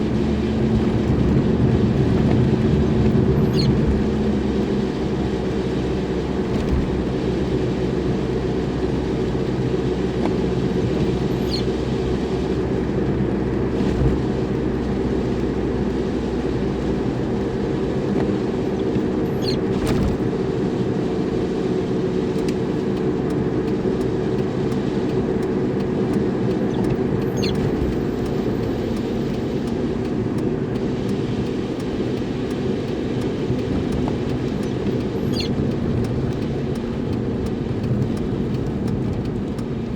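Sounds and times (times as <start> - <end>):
car engine and road noise: 0.0 - 39.9
short high squeak: 3.4 - 3.8, 11.3 - 11.7, 19.3 - 19.6, 26.7 - 28.1, 35.2 - 35.6.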